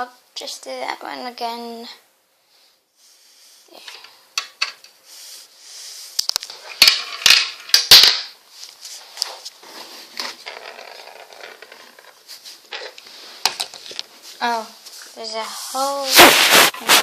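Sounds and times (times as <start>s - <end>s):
marble rattling through plastic run: 6.6s - 8.2s, 10.4s - 12.9s.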